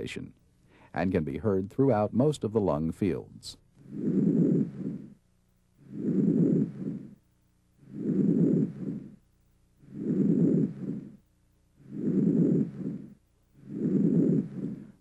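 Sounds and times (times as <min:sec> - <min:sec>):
breath sounds through stethoscope: 0:09.8 - 0:15.0.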